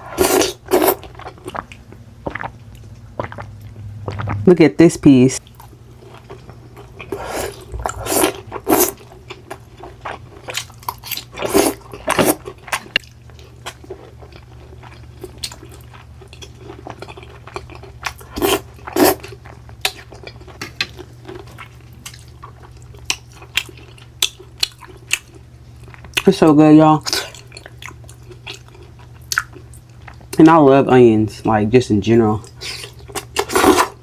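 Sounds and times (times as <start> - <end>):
person chewing: 0.0 - 4.4, 5.4 - 26.3, 27.0 - 30.4, 32.4 - 34.0
low steady hum: 0.0 - 34.0.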